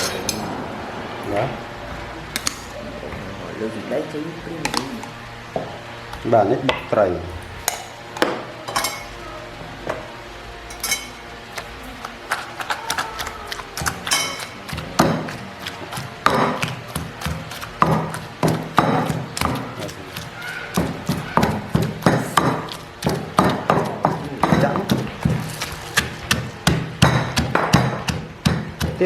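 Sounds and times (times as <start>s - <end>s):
utensils and bowls clicking: 2.3s - 2.8s, 8.7s - 9.2s, 10.7s - 29.0s.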